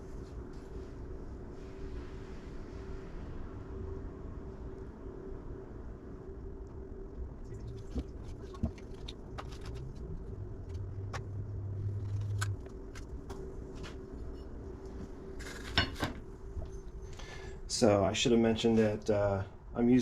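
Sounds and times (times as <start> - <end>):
workshop hum: 0.0 - 20.0.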